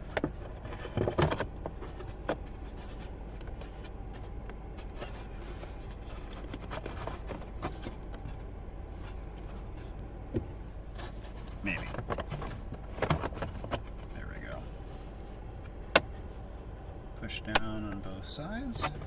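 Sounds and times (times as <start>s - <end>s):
plastic housing scraping: 0.0s - 8.4s, 9.0s - 14.9s
low steady hum: 0.0s - 19.0s.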